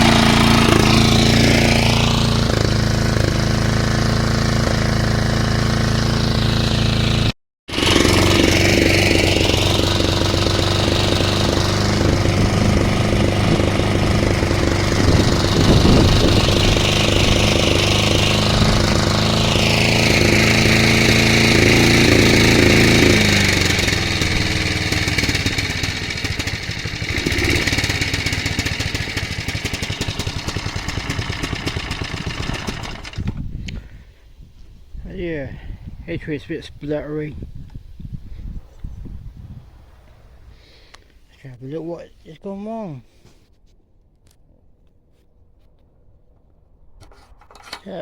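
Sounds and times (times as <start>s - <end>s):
lawn mower engine running: 0.0s - 34.1s.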